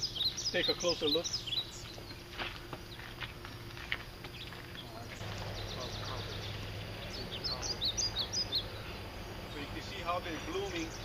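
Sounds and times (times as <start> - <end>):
birds chirping: 0.0 - 11.0
low steady hum: 0.0 - 11.0.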